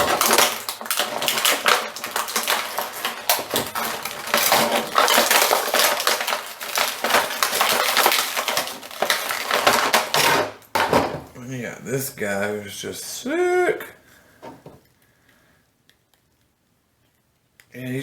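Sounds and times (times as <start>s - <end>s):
plastic accessories clicking: 0.0s - 10.9s
plastic packaging crinkling: 0.0s - 11.3s.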